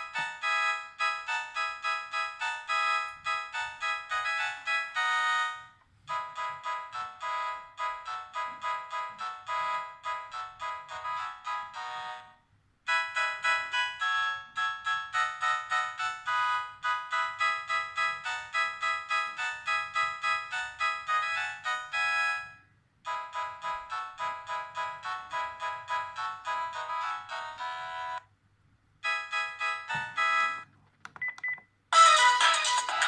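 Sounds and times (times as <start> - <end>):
mobile phone ringtones: 29.0 - 30.6.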